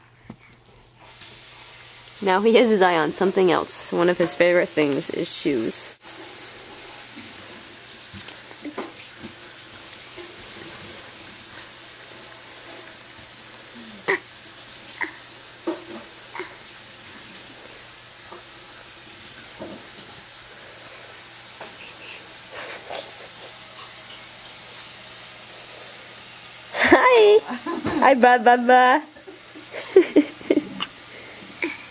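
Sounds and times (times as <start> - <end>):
background hiss: 0.0 - 31.9
baby fake coughing: 15.0 - 15.2, 16.3 - 16.6, 31.6 - 31.9.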